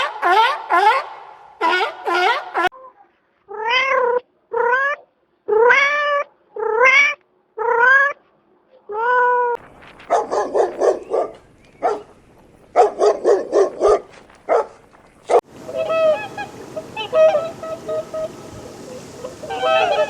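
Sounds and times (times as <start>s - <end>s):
background hiss: 9.6s - 20.0s
fainter higher animal calls: 15.3s - 20.0s.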